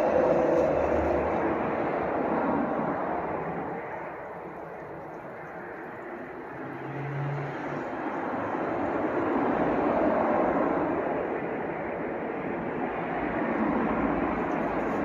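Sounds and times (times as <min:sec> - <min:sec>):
aircraft passing: 0:00.0 - 0:12.0.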